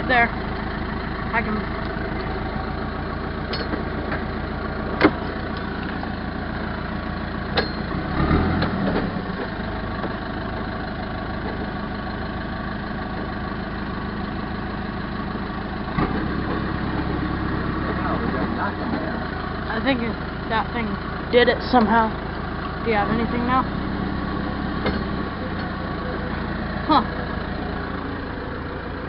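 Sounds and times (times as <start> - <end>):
diesel engine idling: 0.0 - 29.0.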